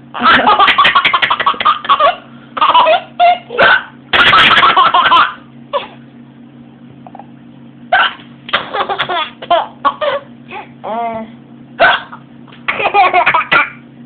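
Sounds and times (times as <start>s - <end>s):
young child laughing: 0.2s - 6.0s, 8.5s - 10.7s, 11.8s - 13.8s
child hiccups: 3.5s - 4.0s, 7.9s - 8.2s, 11.8s - 12.2s.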